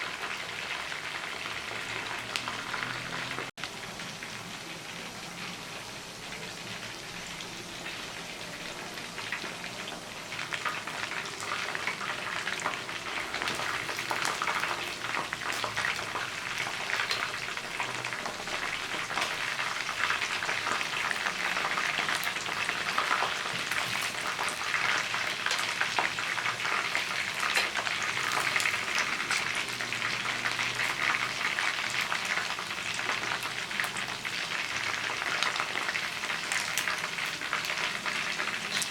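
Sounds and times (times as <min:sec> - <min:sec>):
chicken wings sizzling in a pan: 0:00.0 - 0:38.9.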